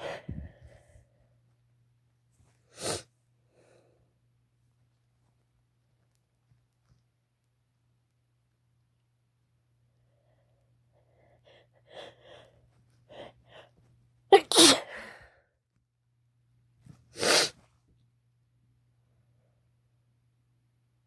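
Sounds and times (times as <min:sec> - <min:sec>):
person sneezing: 0:14.3 - 0:15.2, 0:17.2 - 0:17.6.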